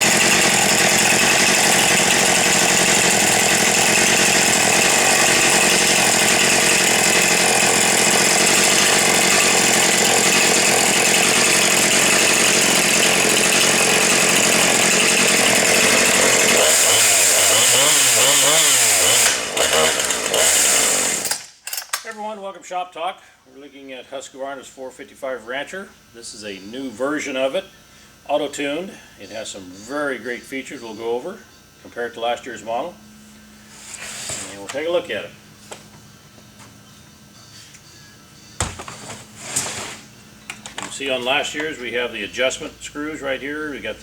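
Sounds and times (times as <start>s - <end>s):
chainsaw engine revving: 0.0s - 21.8s.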